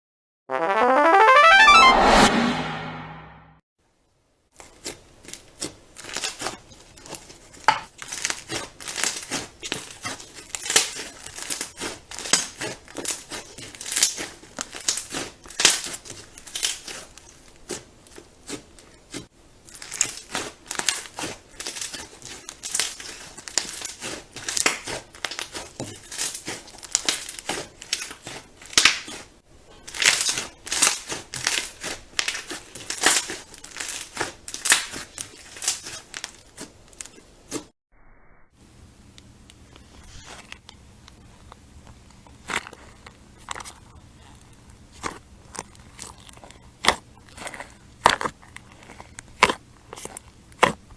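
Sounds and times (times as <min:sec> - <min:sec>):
slime crackling and popping: 0:07.9 - 0:18.2, 0:19.7 - 0:37.6.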